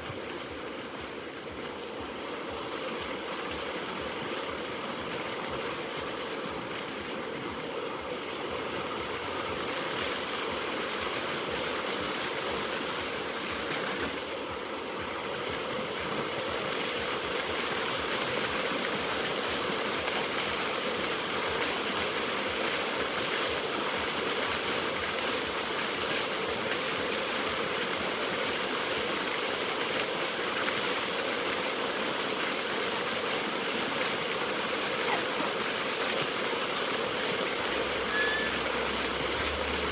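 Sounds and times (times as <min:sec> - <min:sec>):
fountain water splashing: 0:00.0 - 0:39.9.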